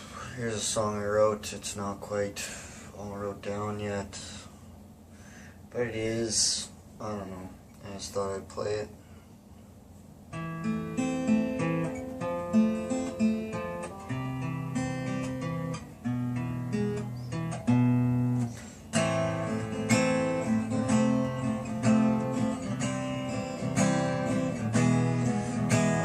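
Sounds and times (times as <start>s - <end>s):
acoustic guitar playing: 10.3s - 26.0s.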